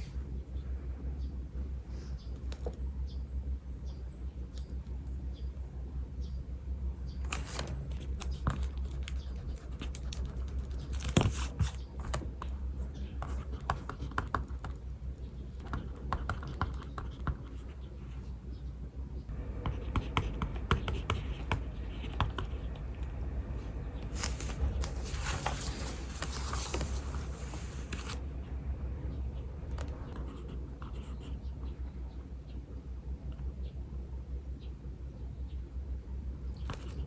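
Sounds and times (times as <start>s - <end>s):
paper rustling: 7.3s - 12.3s, 24.0s - 28.2s
pen scratching on paper: 13.2s - 14.6s, 19.6s - 22.8s, 30.1s - 31.4s.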